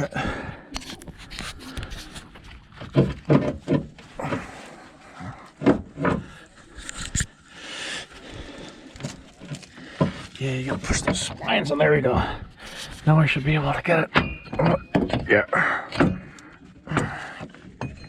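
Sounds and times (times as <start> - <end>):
strained breathing and grunts: 0.0 - 18.0
metal rubbing and scraping: 0.8 - 7.4.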